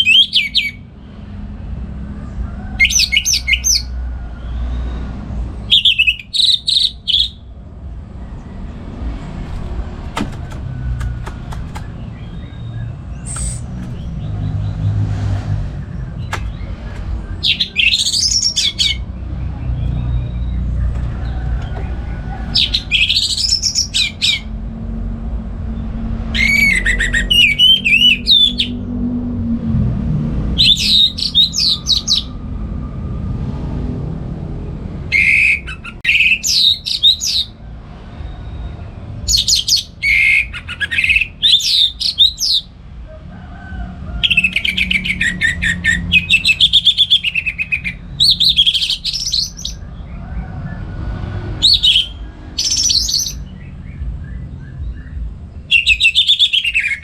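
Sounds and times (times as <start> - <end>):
bird whistled song: 0.0 - 0.8, 2.7 - 4.0, 5.6 - 7.5, 11.8 - 14.3, 17.3 - 19.1, 22.5 - 24.5, 26.4 - 28.8, 30.6 - 32.4, 35.1 - 37.6, 39.3 - 42.7, 44.2 - 49.8, 51.6 - 57.0.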